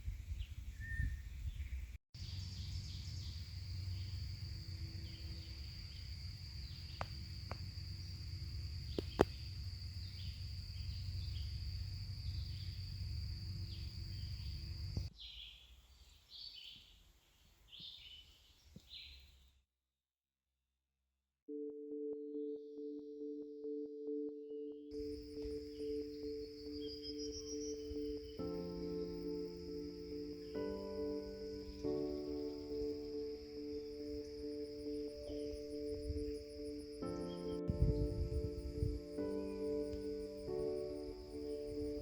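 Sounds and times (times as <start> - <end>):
low wind rumble: 0.0 - 15.1, 25.0 - 42.0
birds chirping: 0.4 - 19.4, 22.4 - 42.0
high-pitched insect drone: 2.5 - 15.0, 25.0 - 42.0
electronic music tones: 21.5 - 42.0.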